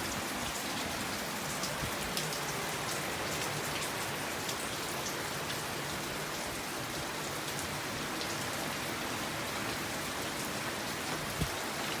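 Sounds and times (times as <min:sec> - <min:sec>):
heavy rain falling: 0:00.0 - 0:12.0.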